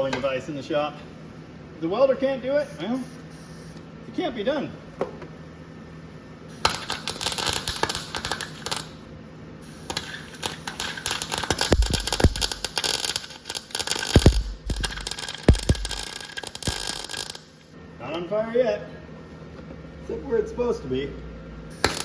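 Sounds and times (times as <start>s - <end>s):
welding arc crackling: 6.6s - 9.0s, 9.7s - 17.8s, 21.8s - 22.0s.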